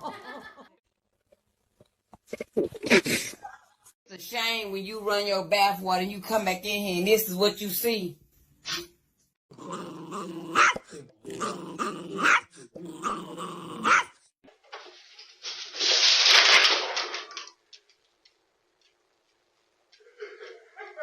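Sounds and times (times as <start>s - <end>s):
dog growling: 9.5s - 14.2s.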